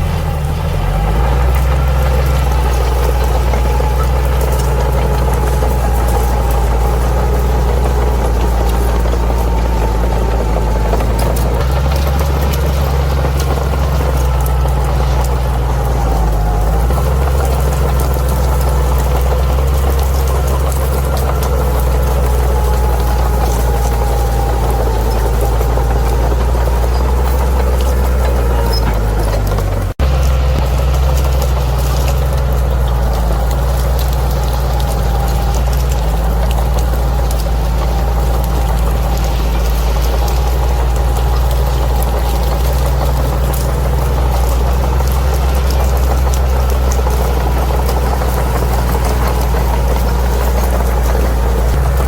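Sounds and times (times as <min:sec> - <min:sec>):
bulldozer diesel engine rumbling: 0:00.0 - 0:52.0.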